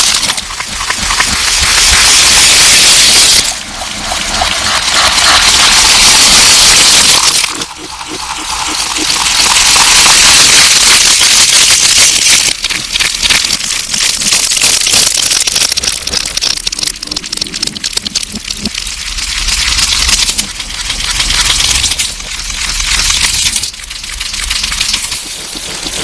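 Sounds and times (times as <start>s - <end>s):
distorted slime hissing: 0.0s - 26.0s.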